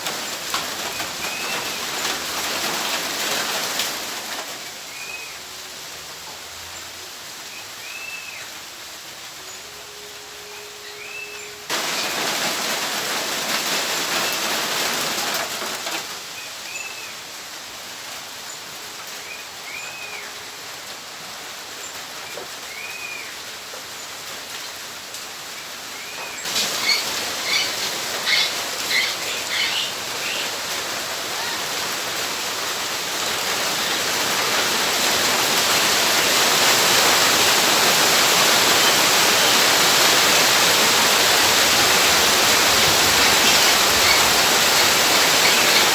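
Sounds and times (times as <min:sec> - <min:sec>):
birds chirping: 0:00.0 - 0:03.5, 0:09.4 - 0:12.9, 0:25.6 - 0:32.4, 0:42.2 - 0:45.9
running water hiss: 0:00.0 - 0:45.9.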